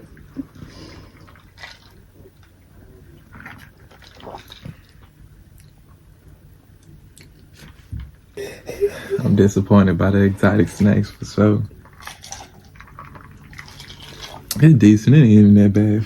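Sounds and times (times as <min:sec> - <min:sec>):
sipping and swallowing: 0:00.0 - 0:05.9, 0:11.8 - 0:14.6.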